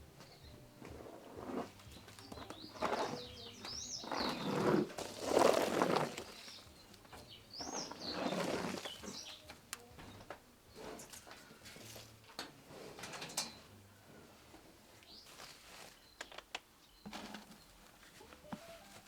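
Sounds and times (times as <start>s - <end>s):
birds chirping: 0.0s - 11.6s.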